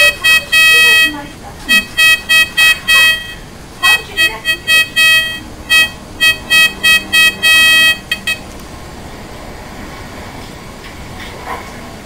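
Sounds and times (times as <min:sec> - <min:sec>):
pinpointer buzzing alert tone: 0:00.0 - 0:08.5.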